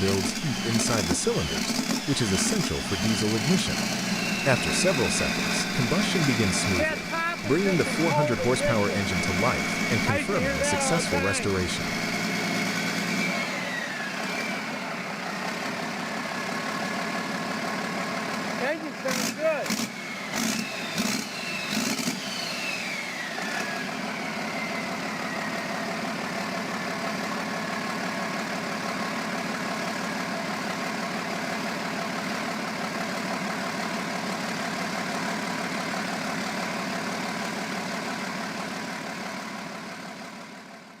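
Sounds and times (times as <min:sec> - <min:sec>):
diesel engine running: 0:00.0 - 0:40.9
high whine falling in pitch: 0:01.4 - 0:12.1.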